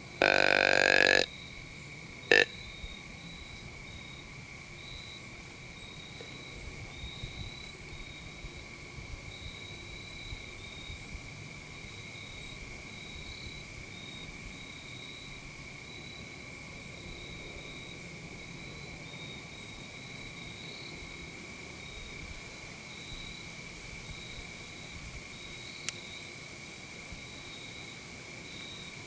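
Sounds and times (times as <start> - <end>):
high insect trill: 0.0 - 29.0
insects droning: 0.0 - 29.0.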